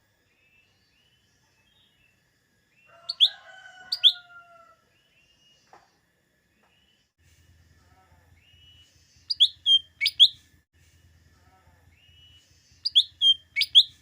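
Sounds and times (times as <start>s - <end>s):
bird singing whistled notes: 3.0s - 4.2s, 8.4s - 10.4s, 11.9s - 14.0s.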